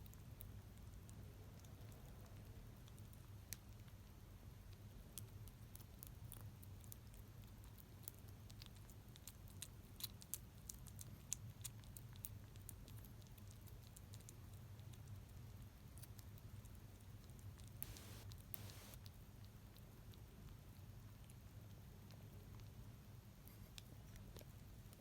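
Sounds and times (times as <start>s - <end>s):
kitten licking and chewing: 0.0s - 25.0s
low steady hum: 17.8s - 19.0s.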